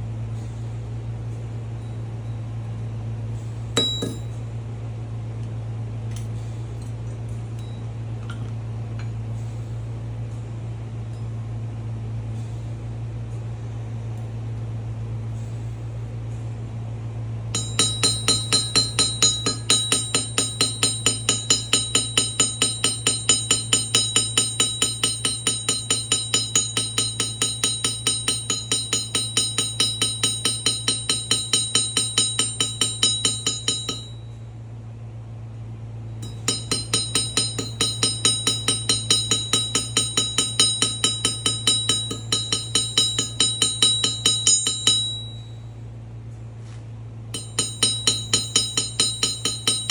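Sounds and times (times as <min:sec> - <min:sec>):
low hum: 0:00.0 - 0:49.9
bell struck rapidly: 0:03.8 - 0:04.4, 0:17.6 - 0:34.3, 0:36.2 - 0:45.6, 0:47.4 - 0:49.9.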